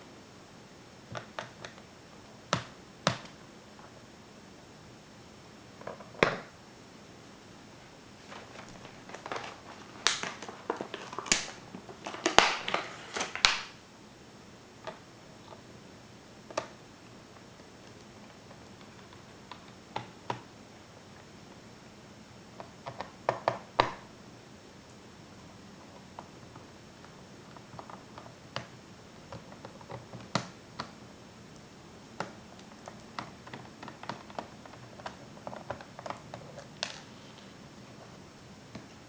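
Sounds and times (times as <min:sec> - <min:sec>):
plastic laptop parts handled: 0:08.2 - 0:13.7, 0:26.1 - 0:28.7, 0:32.2 - 0:37.5.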